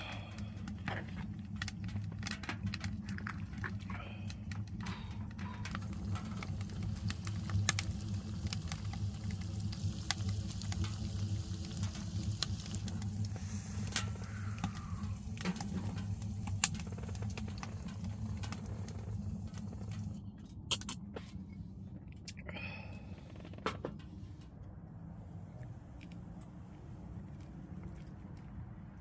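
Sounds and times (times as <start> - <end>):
wood fire crackling and popping: 0.0 - 21.1
steady low hum: 0.0 - 29.0.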